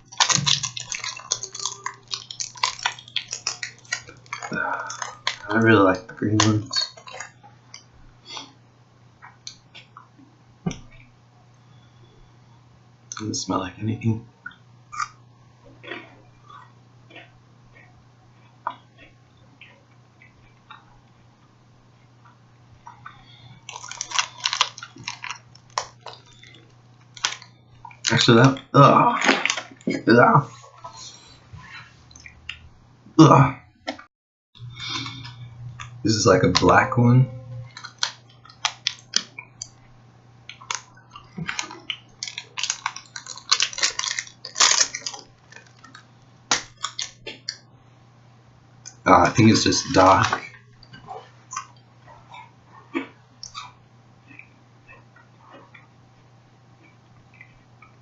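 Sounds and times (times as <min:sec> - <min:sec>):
chewing crisp wafer: 0:00.0 - 0:05.5, 0:06.4 - 0:08.6, 0:23.0 - 0:28.3, 0:37.7 - 0:39.8, 0:40.4 - 0:47.6
plastic wrapper crinkling: 0:00.0 - 0:05.7, 0:06.3 - 0:07.8, 0:23.6 - 0:28.3, 0:37.6 - 0:39.7, 0:40.5 - 0:47.5.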